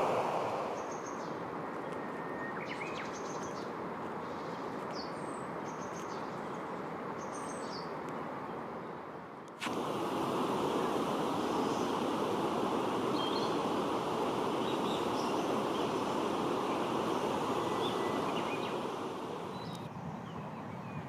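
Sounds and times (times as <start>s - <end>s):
small birds chirping: 11.3s - 21.0s.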